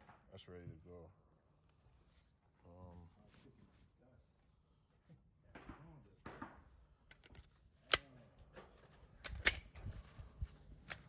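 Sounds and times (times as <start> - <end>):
pistol metallic clicks and knocks: 7.0 - 8.1, 9.2 - 9.8.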